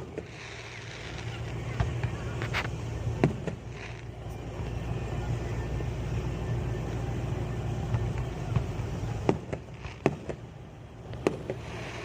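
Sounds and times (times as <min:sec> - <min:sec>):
firework pops: 0:00.0 - 0:04.2, 0:07.9 - 0:12.0
steady low rumble: 0:00.0 - 0:12.0.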